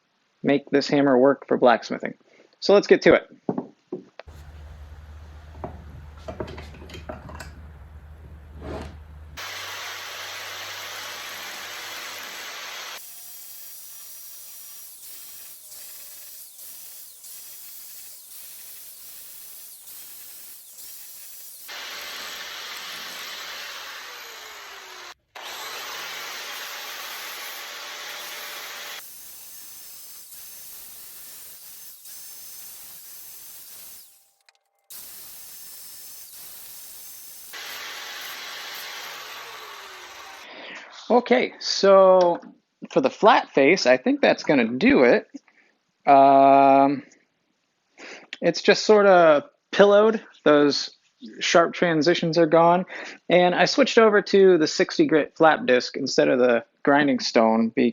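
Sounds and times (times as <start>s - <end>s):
angle grinder grinding steel: 4.3s - 40.5s.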